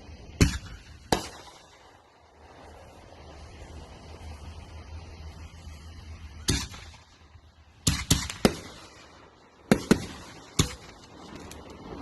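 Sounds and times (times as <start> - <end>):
fireworks bangs: 0.3 - 2.4, 6.4 - 12.0.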